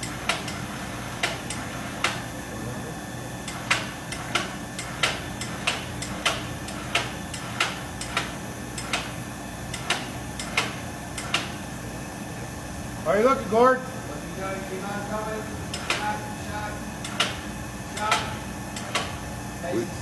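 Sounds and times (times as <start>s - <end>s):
machinery hum: 0.0s - 20.0s
sharp metallic clicks: 17.0s - 17.4s, 18.0s - 19.1s.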